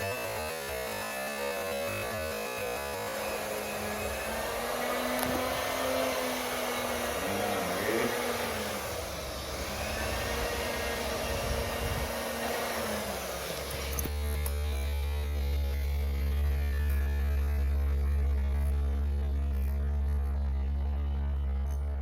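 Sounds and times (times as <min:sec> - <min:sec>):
electric fan running: 0:00.0 - 0:22.0.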